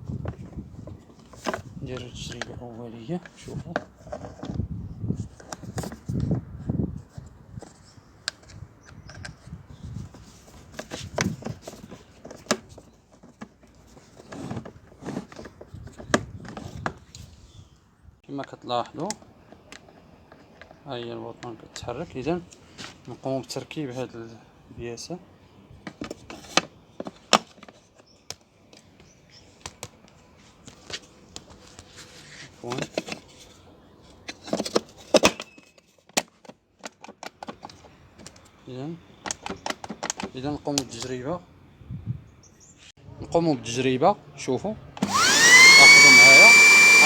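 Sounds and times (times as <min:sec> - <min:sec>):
plastic parts clicking and knocking: 0:34.3 - 0:38.6, 0:39.2 - 0:41.1.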